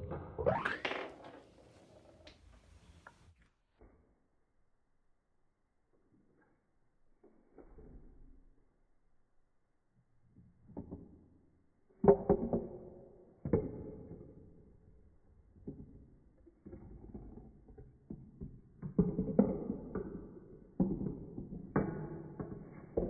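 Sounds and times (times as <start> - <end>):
marbles rolling down plastic track: 0.0 - 2.6.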